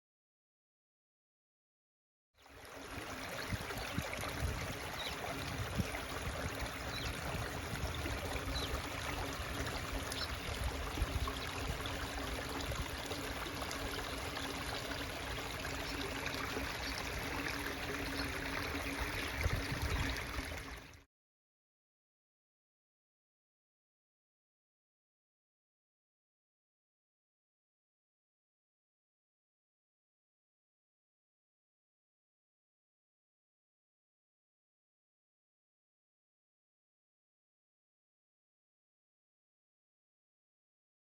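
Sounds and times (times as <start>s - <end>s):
stream water rushing: 2.5s - 21.0s.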